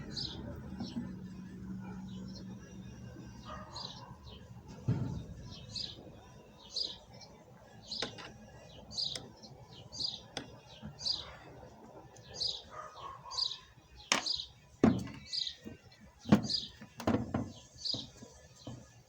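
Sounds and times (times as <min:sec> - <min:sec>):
small bird chirping: 0:03.3 - 0:04.5, 0:05.4 - 0:16.9
dull thump: 0:04.7 - 0:05.9.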